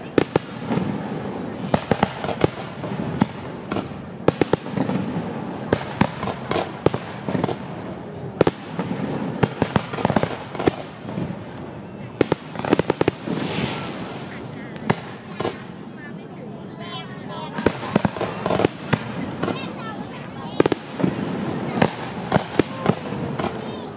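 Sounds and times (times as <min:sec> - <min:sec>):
fireworks bangs: 0:00.0 - 0:23.9
crackling pops: 0:01.7 - 0:05.1, 0:08.4 - 0:15.8, 0:17.6 - 0:20.0, 0:20.6 - 0:23.9.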